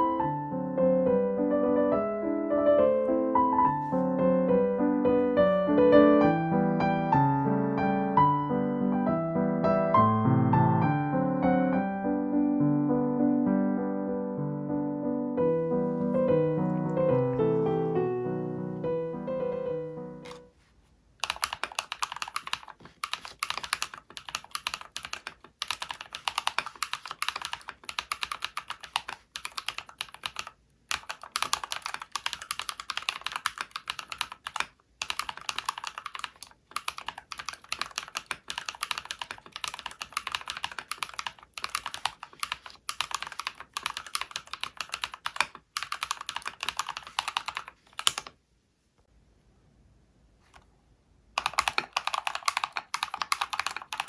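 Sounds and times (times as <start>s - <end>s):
typing on mechanical keyboard: 21.2s - 48.4s, 51.4s - 54.0s.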